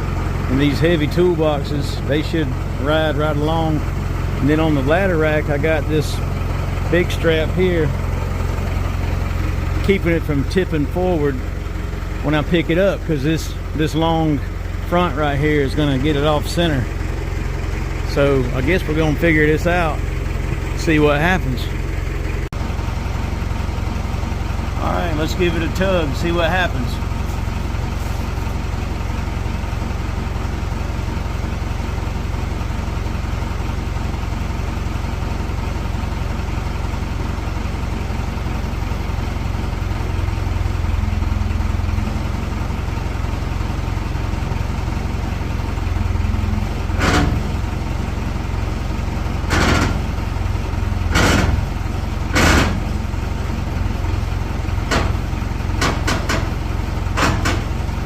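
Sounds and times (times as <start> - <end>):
engine idling: 0.0 - 58.0
sharp clunks and pops: 46.9 - 47.6, 49.5 - 50.1, 51.1 - 51.7, 52.3 - 52.9, 54.8 - 57.7.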